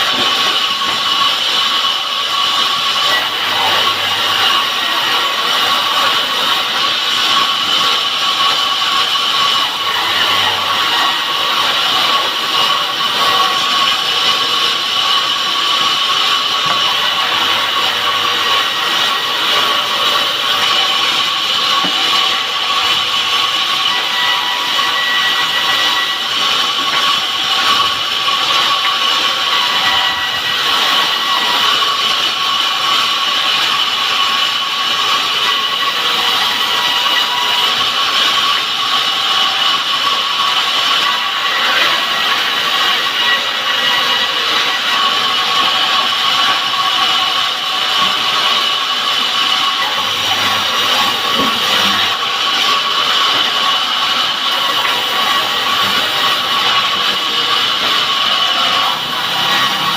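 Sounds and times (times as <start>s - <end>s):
power saw cutting wood: 0.0s - 59.9s
high whine: 35.6s - 59.9s.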